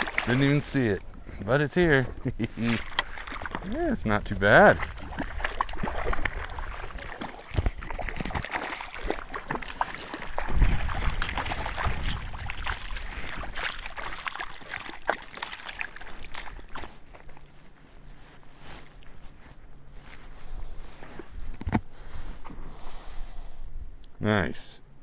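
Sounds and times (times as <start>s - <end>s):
water splashing and trickling: 0.0s - 19.4s.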